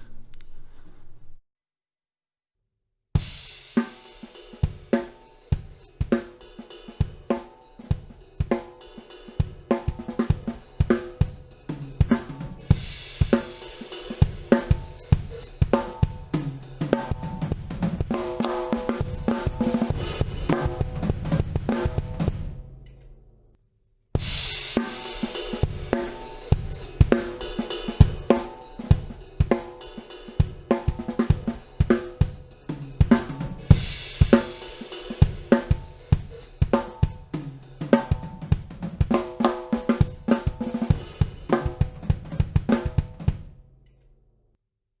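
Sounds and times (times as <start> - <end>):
drum kit beat: 3.2 - 22.9, 24.2 - 43.5.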